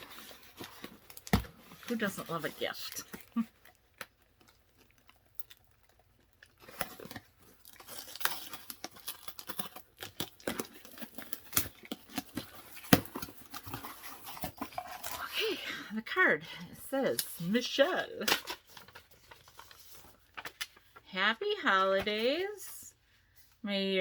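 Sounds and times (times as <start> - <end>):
gift paper crackling and tearing: 0.0 - 15.6, 17.3 - 21.0.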